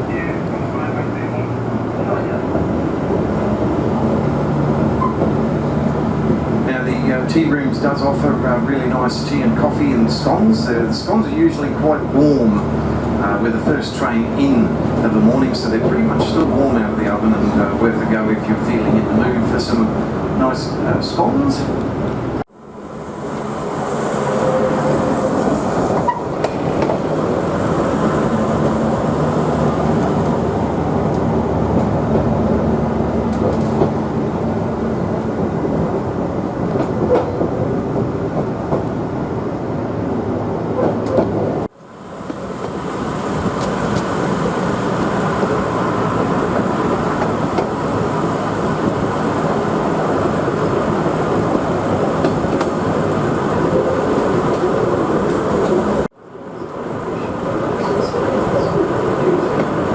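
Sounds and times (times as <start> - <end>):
diesel rail motor engine drone: 0.0 - 59.9
wheels clicking over rail joints: 25.9 - 39.1, 42.2 - 56.1, 56.7 - 59.9.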